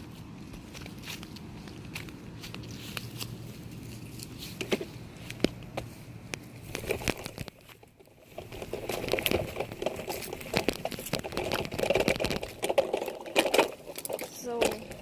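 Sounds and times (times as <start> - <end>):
cardboard crinkling and rustling: 6.6 - 15.0.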